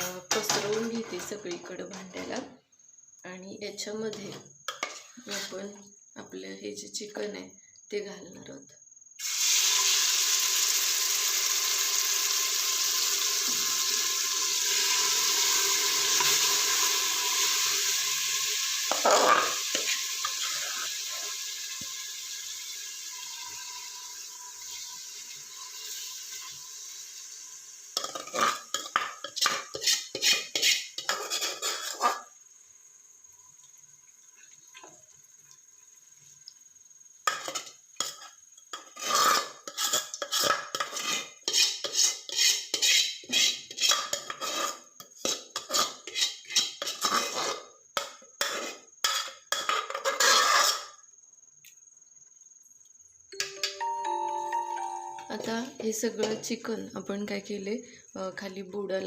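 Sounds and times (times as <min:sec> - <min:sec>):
spoon scraping a pot: 0:04.1 - 0:05.6, 0:18.9 - 0:21.2, 0:28.0 - 0:32.3, 0:37.2 - 0:51.0
steady hiss: 0:09.2 - 0:40.6.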